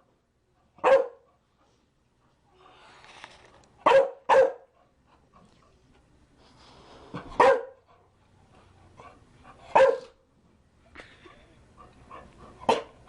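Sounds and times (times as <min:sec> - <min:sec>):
dog barking: 0:00.8 - 0:01.3, 0:03.8 - 0:04.7, 0:07.4 - 0:07.8, 0:09.7 - 0:10.2, 0:12.7 - 0:13.0.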